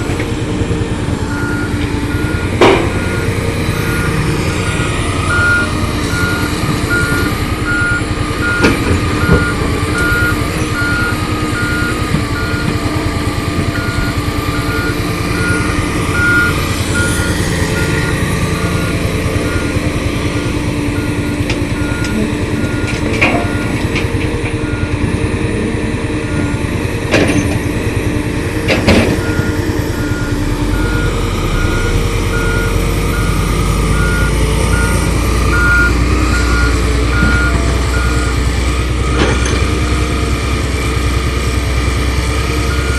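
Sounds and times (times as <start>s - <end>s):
diesel engine drone: 0.0s - 42.9s
back-up alarm beeping: 1.3s - 12.8s, 13.6s - 23.9s, 29.2s - 40.3s, 42.6s - 42.9s.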